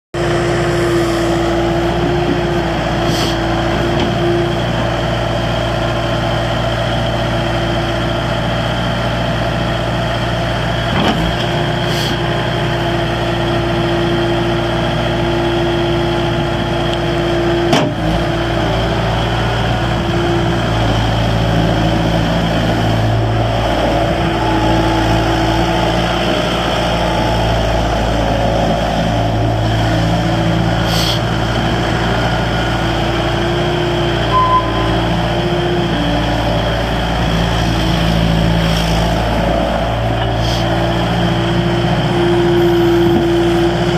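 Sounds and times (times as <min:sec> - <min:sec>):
loader diesel engine running: 0:00.2 - 0:43.9
steady tone: 0:32.2 - 0:38.7.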